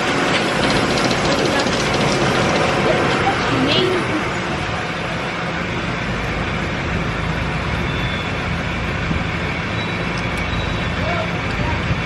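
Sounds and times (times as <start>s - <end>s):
engine droning: 0.0s - 12.0s
hayride wagon rumbling: 0.0s - 12.0s.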